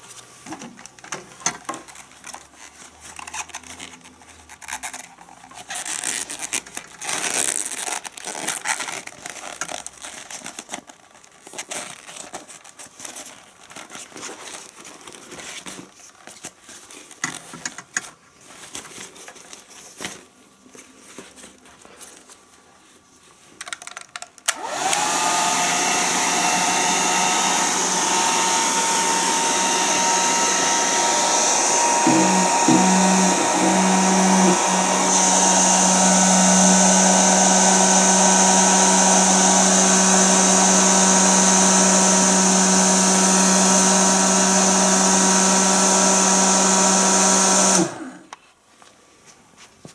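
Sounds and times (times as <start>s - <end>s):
rustling and handling noises: 0.0s - 45.9s, 46.5s - 49.9s
hair dryer fan running: 24.5s - 48.3s.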